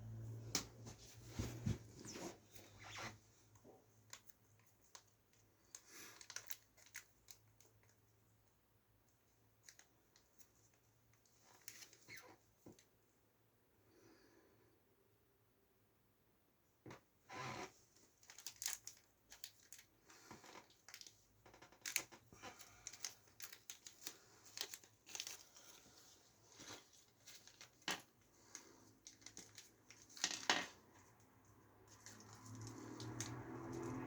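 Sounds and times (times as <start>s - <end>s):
packaging crinkling: 5.7s - 7.9s, 18.2s - 30.7s.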